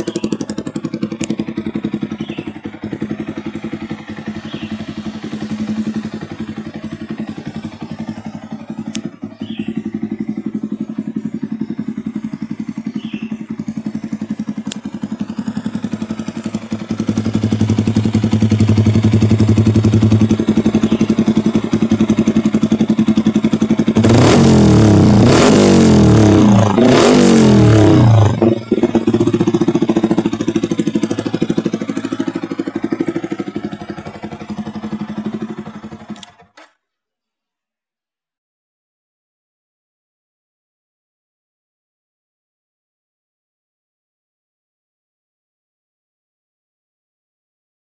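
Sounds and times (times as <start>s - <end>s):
motorcycle engine idling and revving: 0.0s - 36.8s.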